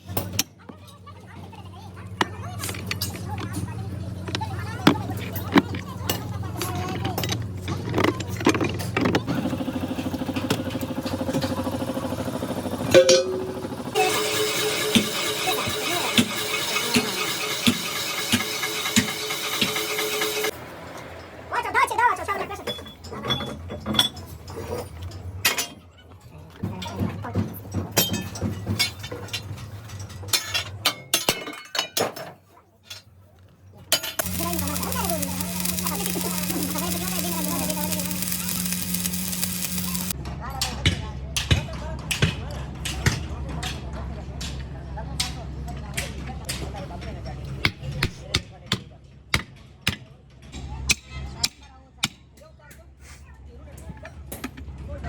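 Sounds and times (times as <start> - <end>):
motor throbbing: 34.2 - 40.1.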